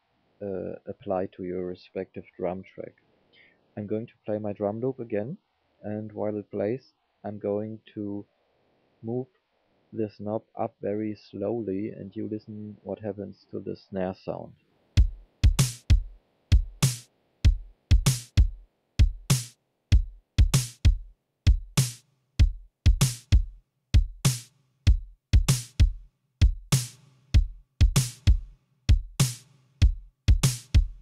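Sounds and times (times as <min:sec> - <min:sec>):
drum machine kick and snare: 0:15.0 - 0:31.0.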